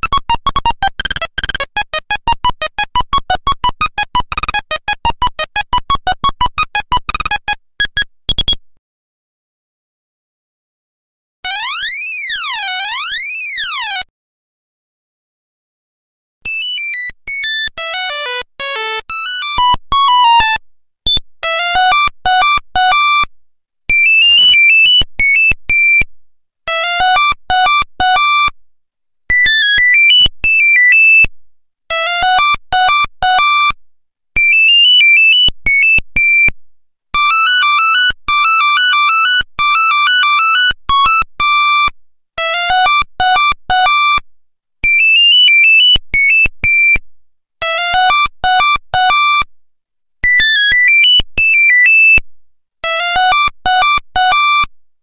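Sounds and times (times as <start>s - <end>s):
monophonic ringtone beeping tune: 0.1s - 8.6s, 24.0s - 25.5s, 29.3s - 31.3s, 34.5s - 36.0s, 44.9s - 46.5s, 50.3s - 52.2s.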